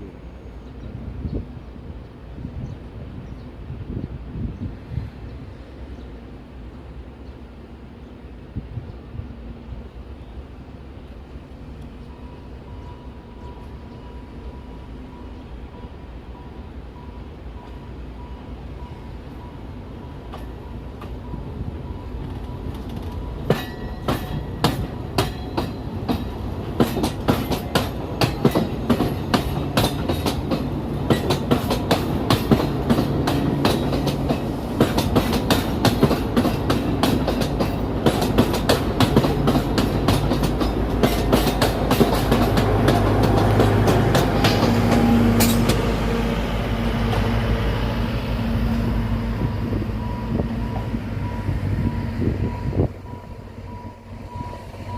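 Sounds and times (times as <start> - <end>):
train rumbling: 0.0 - 54.9
wheels clicking over rail joints: 22.2 - 45.8.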